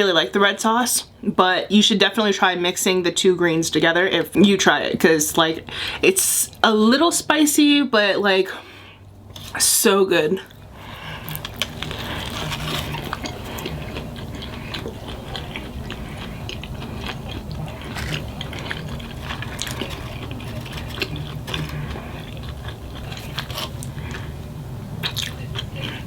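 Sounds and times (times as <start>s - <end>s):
chewing and biting food: 10.4s - 26.0s.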